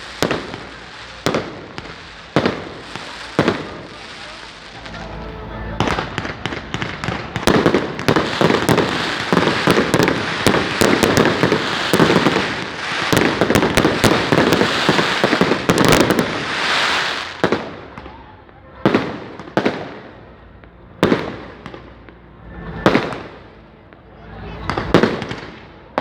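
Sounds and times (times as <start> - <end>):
firecrackers popping and banging: 0.0 - 26.0.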